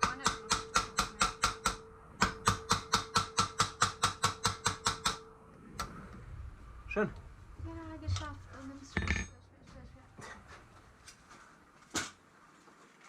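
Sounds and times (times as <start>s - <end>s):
hammer striking rivet on steel: 0.0s - 5.3s
metal plate ringing: 9.0s - 9.4s.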